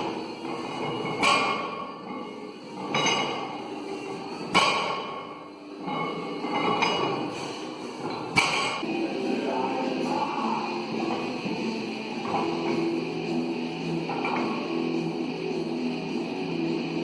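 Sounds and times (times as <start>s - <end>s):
background music: 0.0s - 17.0s
barbell plates clanking on floor: 0.7s - 3.6s, 5.8s - 7.3s.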